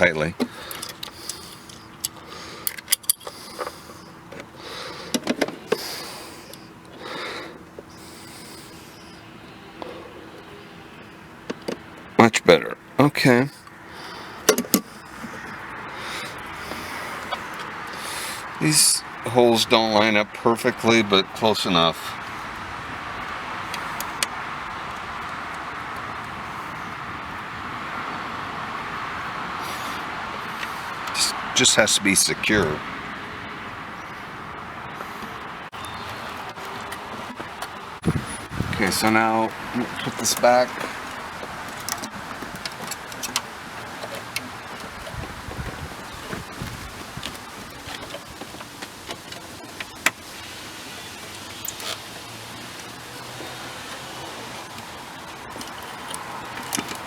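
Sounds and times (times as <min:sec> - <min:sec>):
handling noise: 0:00.0 - 0:12.3, 0:13.3 - 0:18.6, 0:34.0 - 0:57.0
distant road traffic: 0:00.0 - 0:57.0.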